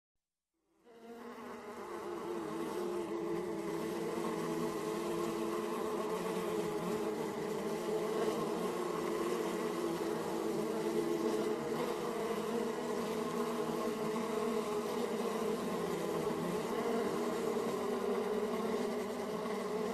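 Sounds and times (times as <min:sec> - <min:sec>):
bees buzzing: 0:01.0 - 0:19.9.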